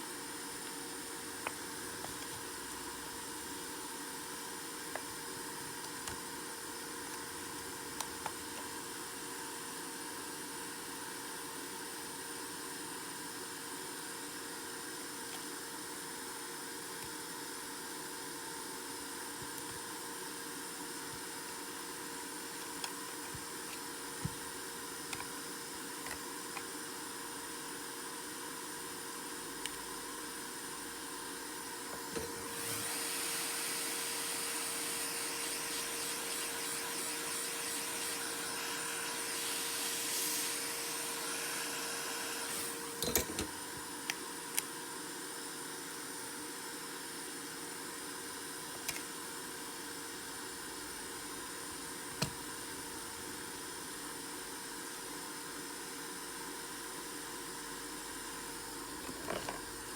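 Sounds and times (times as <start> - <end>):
steady hiss: 31.8 - 43.4.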